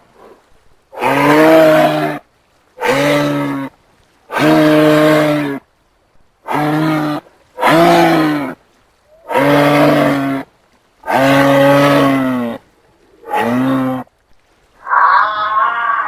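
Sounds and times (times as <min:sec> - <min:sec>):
deep mooing calls: 0:14.8 - 0:16.0.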